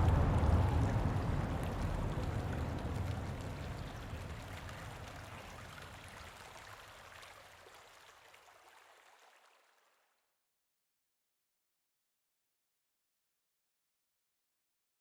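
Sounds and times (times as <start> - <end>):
steady rushing noise: 0.0 - 5.3
low rumble: 0.0 - 5.4.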